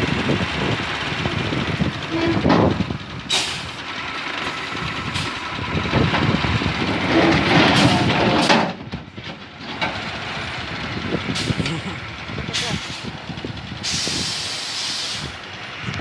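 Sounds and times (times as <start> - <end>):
truck engine running: 0.0 - 16.0
air hissing: 13.8 - 15.4.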